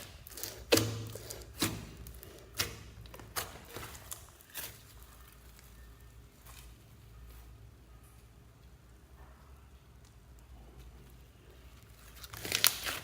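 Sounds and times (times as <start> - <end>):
slime popping and squelching: 0.0 - 6.9, 11.9 - 13.0.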